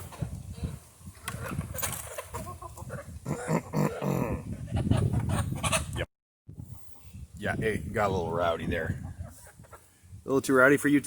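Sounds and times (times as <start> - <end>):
chickens calling: 0.0 - 6.0, 8.0 - 9.9.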